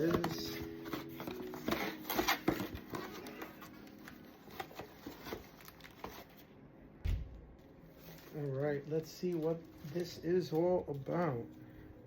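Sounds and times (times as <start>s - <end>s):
cardboard box rustling and crinkling: 0.0s - 6.4s.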